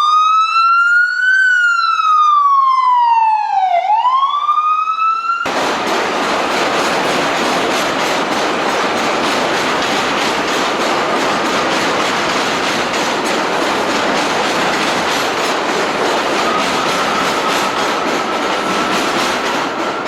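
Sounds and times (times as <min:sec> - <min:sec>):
siren wailing: 0:00.0 - 0:05.5
subway train rumbling past: 0:05.5 - 0:20.0.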